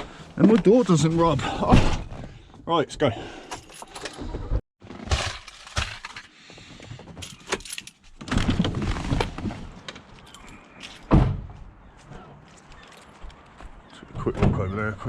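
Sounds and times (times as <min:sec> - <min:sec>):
keys jangling: 0:07.2 - 0:08.1.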